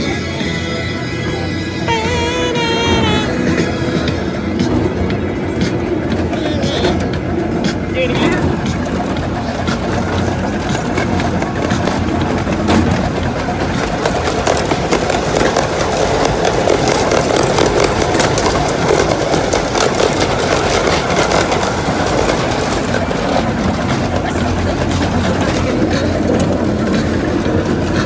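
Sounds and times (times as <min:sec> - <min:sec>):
train rumbling on track: 0:00.0 - 0:28.0
wheel clicks: 0:01.9 - 0:28.0.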